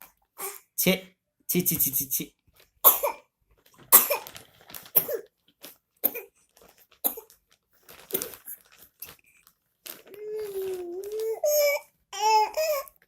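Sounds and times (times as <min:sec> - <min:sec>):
young child coughing: 0:02.9 - 0:03.3, 0:03.9 - 0:04.3.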